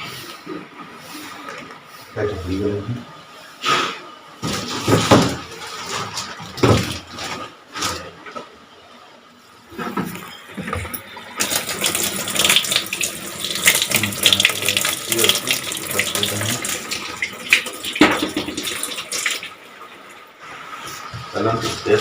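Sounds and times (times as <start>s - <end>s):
water rushing from a tap: 11.4s - 20.2s.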